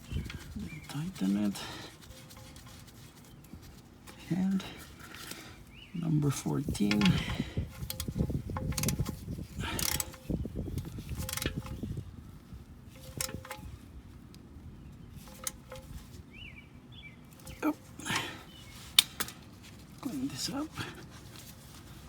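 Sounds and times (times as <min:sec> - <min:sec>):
ratchet wrench clicking: 0:06.8 - 0:12.0, 0:13.0 - 0:13.8.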